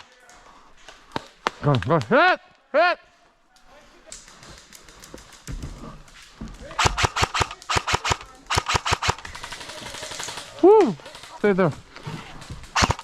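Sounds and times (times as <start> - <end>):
airsoft guns firing: 6.7 - 11.4, 12.6 - 13.0.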